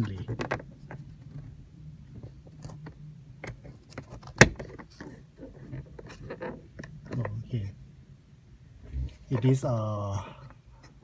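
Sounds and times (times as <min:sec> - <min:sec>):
plastic clicks and scrapes: 0:00.0 - 0:07.4
steady low hum: 0:00.0 - 0:11.0.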